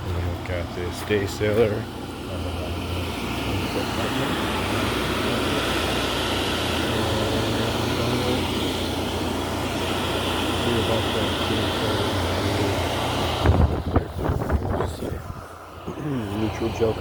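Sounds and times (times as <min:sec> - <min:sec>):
machine hum with hiss: 0:00.0 - 0:17.0.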